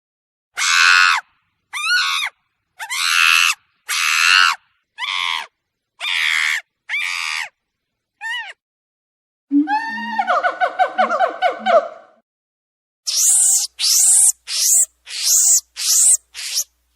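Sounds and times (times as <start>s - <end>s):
monkey screeching: 0.6s - 7.5s, 8.2s - 8.6s, 13.1s - 16.7s.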